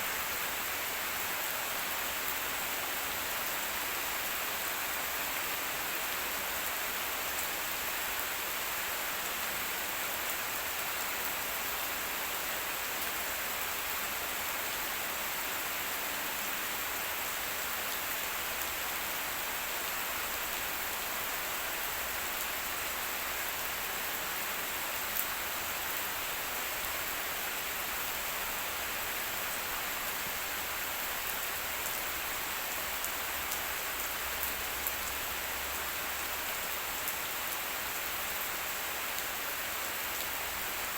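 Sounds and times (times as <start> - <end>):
rain pattering: 16.4 - 40.9.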